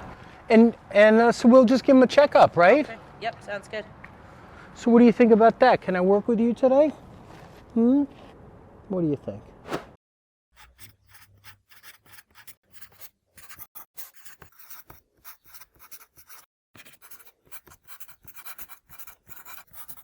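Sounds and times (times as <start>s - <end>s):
scratchy rubbing strokes: 10.6s - 20.0s.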